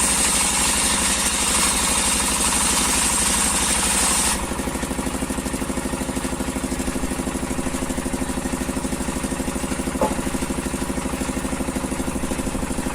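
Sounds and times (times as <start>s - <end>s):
short knock: 10.0s - 10.3s.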